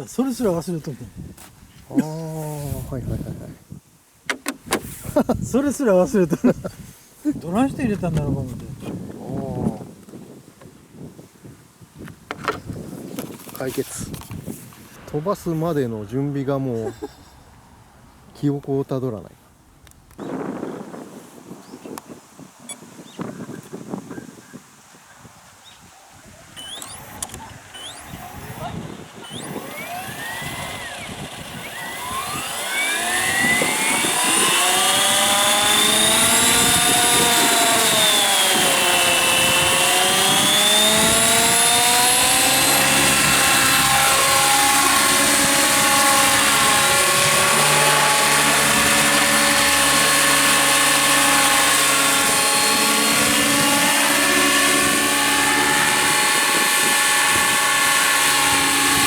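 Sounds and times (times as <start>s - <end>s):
model helicopter rotor whine: 26.2s - 59.0s.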